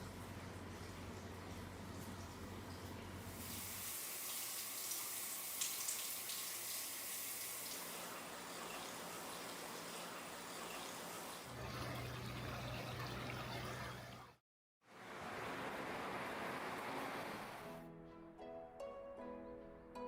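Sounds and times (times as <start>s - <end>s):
water pouring into a bath: 0.7s - 12.3s.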